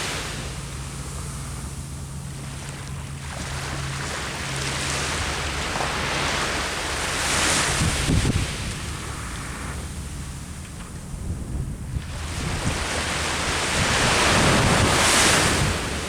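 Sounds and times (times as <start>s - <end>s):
sea waves washing onto shore: 0.0s - 16.0s
wind rumbling on microphone: 0.0s - 16.0s.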